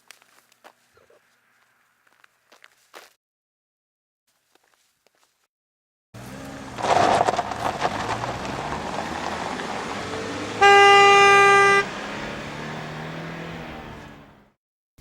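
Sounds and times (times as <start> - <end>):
traffic noise: 6.2 - 14.6
car horn honking: 10.0 - 12.3.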